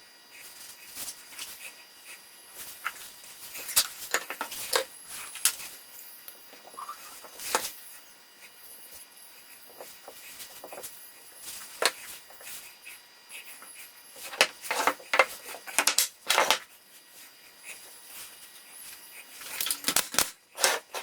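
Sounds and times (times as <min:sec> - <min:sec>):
wooden parts and tools knocking: 0:14.3 - 0:16.6.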